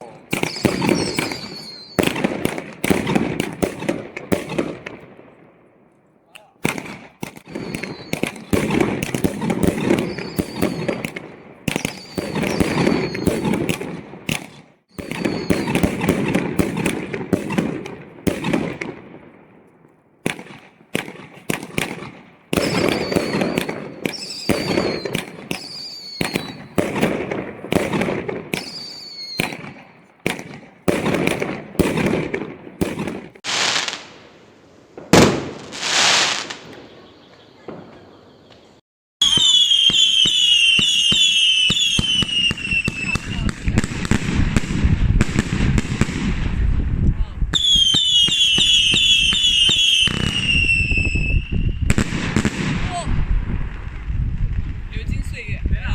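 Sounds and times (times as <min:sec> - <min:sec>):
fireworks bangs and crackling: 0:00.0 - 0:05.6, 0:06.4 - 0:55.9
fireworks whistles: 0:00.3 - 0:03.5, 0:07.2 - 0:17.6, 0:21.0 - 0:32.2, 0:32.8 - 0:46.2, 0:47.5 - 0:53.2
fireworks hissing whooshes: 0:32.8 - 0:36.8.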